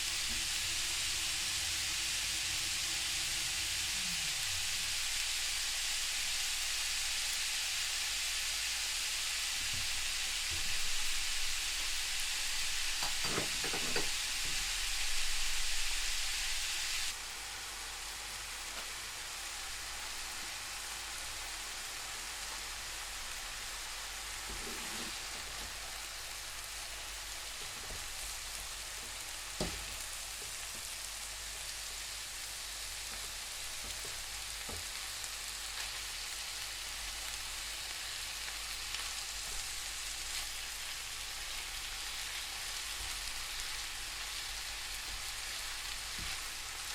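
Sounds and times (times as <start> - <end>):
beef sizzling in a pan: 0.0 - 46.9
utensil knocking against pan: 13.0 - 14.2.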